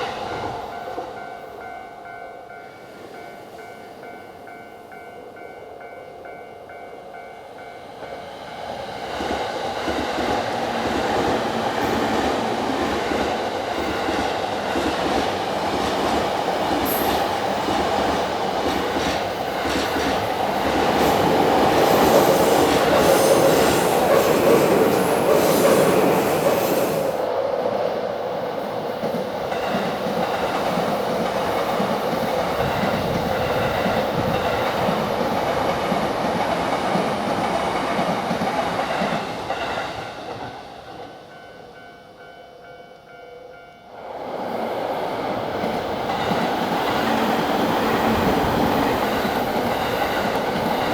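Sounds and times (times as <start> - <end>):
electric train passing: 0.0 - 50.9
high hiss: 21.8 - 27.3.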